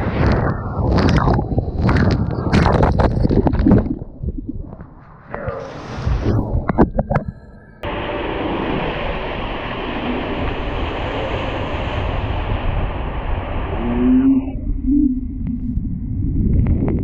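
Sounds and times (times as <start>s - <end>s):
rushing water in slide tube: 7.8s - 14.3s.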